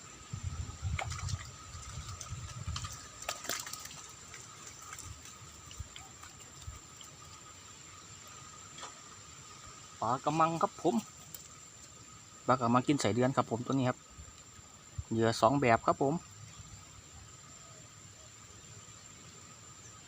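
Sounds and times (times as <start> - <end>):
high insect drone: 0.0 - 20.0
water splashing and sloshing: 0.8 - 9.2.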